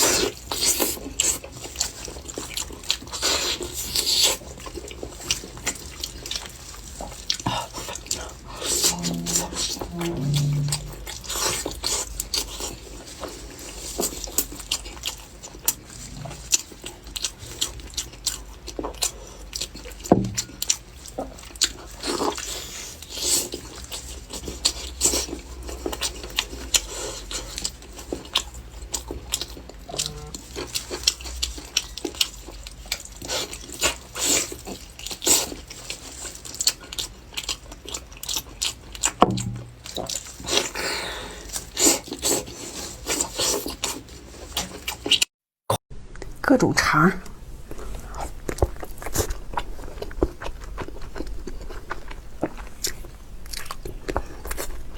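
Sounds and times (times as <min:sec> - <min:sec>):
chewing and mouth smacks: 0:00.0 - 0:08.3, 0:14.0 - 0:40.8, 0:47.7 - 0:54.9.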